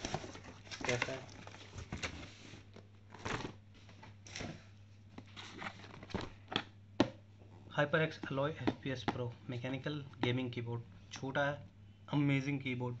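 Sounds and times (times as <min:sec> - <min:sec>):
cardboard packaging rustling: 0:00.0 - 0:04.5, 0:05.1 - 0:06.4.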